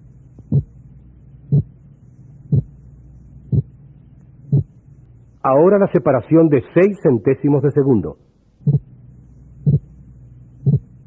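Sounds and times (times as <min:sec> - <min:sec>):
steady low hum: 0:00.0 - 0:11.0
heartbeat through stethoscope: 0:00.4 - 0:00.8, 0:01.5 - 0:01.7, 0:02.5 - 0:02.7, 0:03.5 - 0:03.7, 0:04.5 - 0:04.7, 0:08.6 - 0:08.9, 0:09.6 - 0:09.9, 0:10.6 - 0:11.0.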